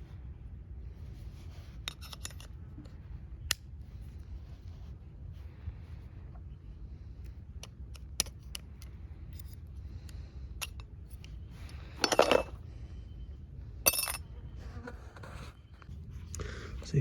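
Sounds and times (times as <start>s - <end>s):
small hard pieces rattling: 12.0s - 12.6s.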